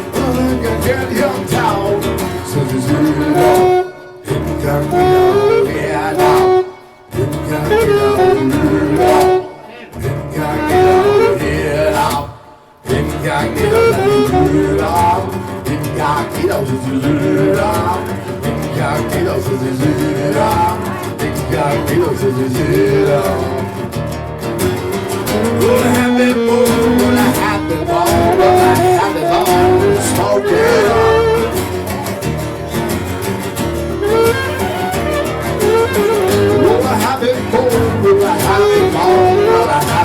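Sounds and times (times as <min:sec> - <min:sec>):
instrumental accompaniment: 0:00.0 - 0:12.3, 0:13.0 - 0:16.0, 0:22.7 - 0:40.0
person singing: 0:00.0 - 0:23.9, 0:24.8 - 0:32.9, 0:34.0 - 0:40.0.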